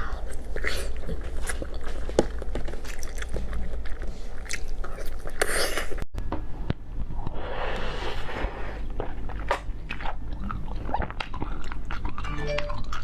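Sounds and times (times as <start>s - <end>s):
chewing soft food: 0.0s - 6.0s, 8.8s - 13.0s.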